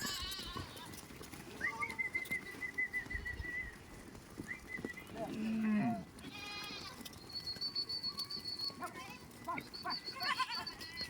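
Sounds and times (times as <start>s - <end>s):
goat bleating: 0.0s - 1.0s, 5.4s - 7.1s, 10.1s - 11.0s
high trilled whistles: 7.2s - 8.9s.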